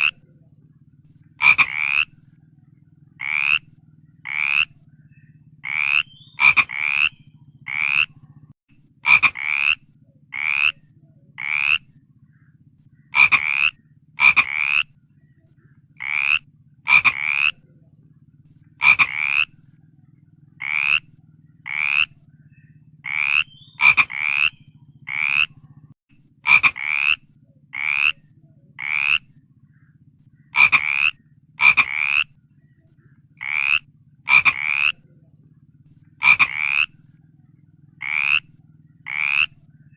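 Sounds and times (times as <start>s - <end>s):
frogs croaking: 0.0s - 39.9s
steady low hum: 0.0s - 39.9s.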